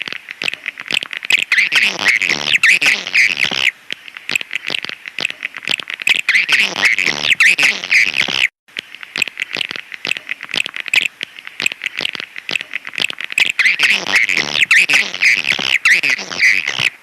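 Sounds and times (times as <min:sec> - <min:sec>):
swiftlet chirps and twitters: 0:00.4 - 0:03.7, 0:06.1 - 0:08.4, 0:09.2 - 0:17.0.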